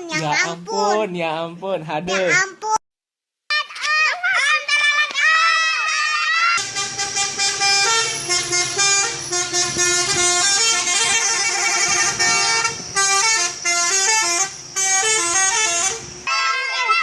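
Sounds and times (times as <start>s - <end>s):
bus musical horn playing a tune: 4.7s - 17.0s.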